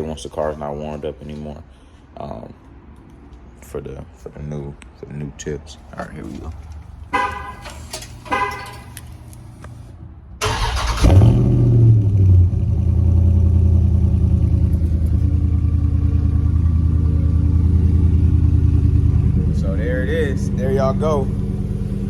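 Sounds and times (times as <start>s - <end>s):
car engine starting and idling: 5.8s - 22.0s
car horn chirps: 7.1s - 9.3s.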